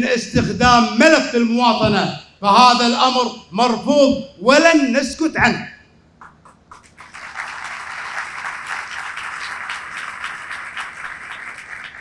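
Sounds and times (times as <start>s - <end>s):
audience applauding: 6.2s - 12.0s.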